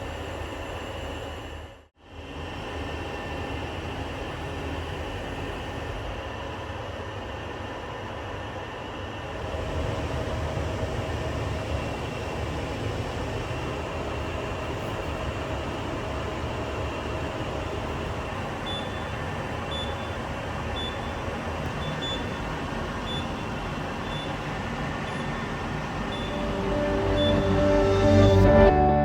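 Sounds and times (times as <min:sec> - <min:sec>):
workshop machinery hum: 0:09.2 - 0:29.0
short high-pitched beeps: 0:25.1 - 0:28.7.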